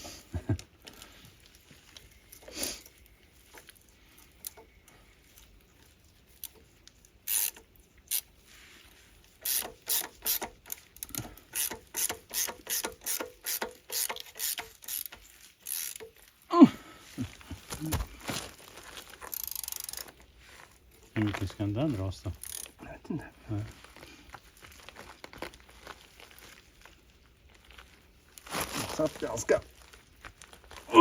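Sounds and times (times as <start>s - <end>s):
ratchet wrench clicking: 7.2s - 8.3s, 9.4s - 16.3s, 19.2s - 20.1s, 22.4s - 22.8s.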